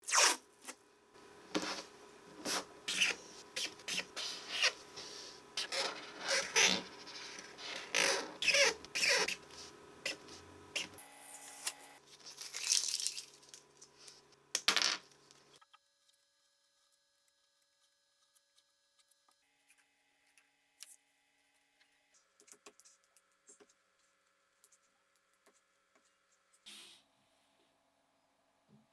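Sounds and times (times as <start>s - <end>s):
faint electrical hum: 0.0s - 19.4s
pen tip squeaking: 2.4s - 11.0s.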